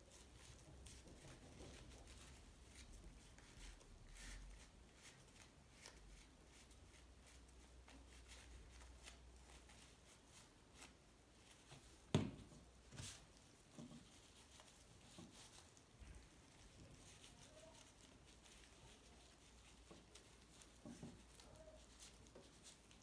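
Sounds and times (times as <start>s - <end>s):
hands working on bicycle parts: 11.5s - 18.7s.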